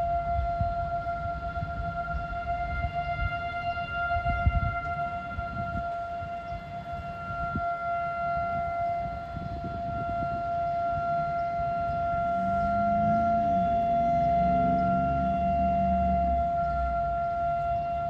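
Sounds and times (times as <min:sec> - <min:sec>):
warning siren steady tone: 0:00.0 - 0:18.0
gusty rumble: 0:08.4 - 0:18.0.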